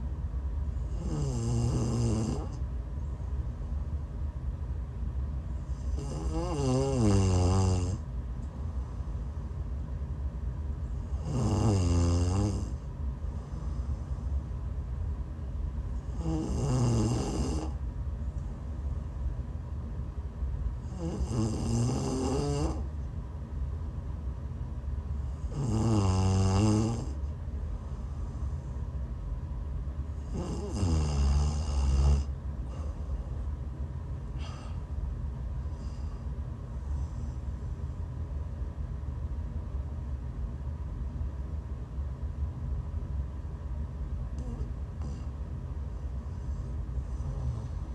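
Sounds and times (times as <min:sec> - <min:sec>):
woman snoring: 0:00.8 - 0:02.6, 0:05.7 - 0:08.0, 0:11.1 - 0:12.8, 0:16.0 - 0:17.8, 0:20.8 - 0:22.9, 0:25.3 - 0:27.2, 0:30.2 - 0:32.9, 0:34.4 - 0:34.8, 0:47.1 - 0:47.9.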